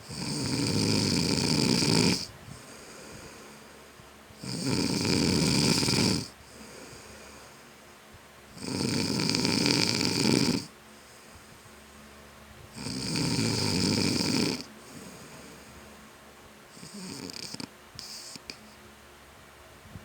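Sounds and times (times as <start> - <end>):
man snoring: 0.0 - 3.8, 4.4 - 7.6, 8.6 - 10.7, 12.7 - 15.7, 16.8 - 18.6.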